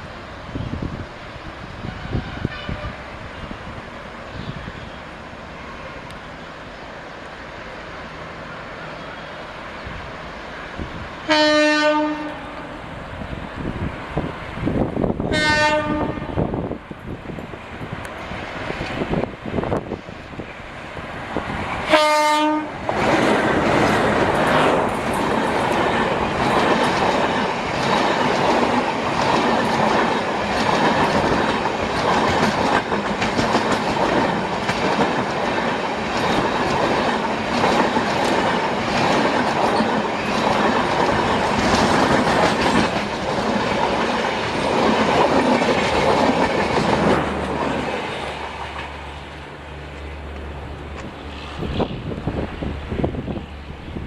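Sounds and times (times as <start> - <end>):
train running past: 0.0 - 54.0
locomotive horn blast: 1.8 - 3.2, 11.3 - 12.8, 15.3 - 16.4, 21.9 - 22.8
wheels clicking over rail joints: 22.8 - 52.1.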